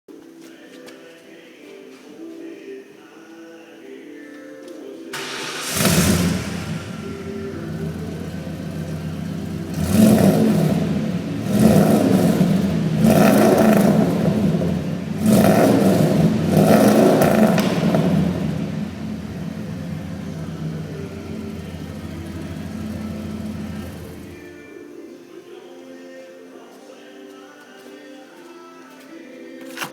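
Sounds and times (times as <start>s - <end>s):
truck engine idling and revving: 5.2s - 24.6s.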